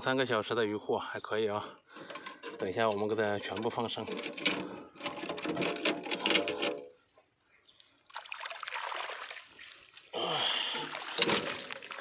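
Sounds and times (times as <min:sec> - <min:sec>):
water trickling and splashing: 0:07.8 - 0:12.0.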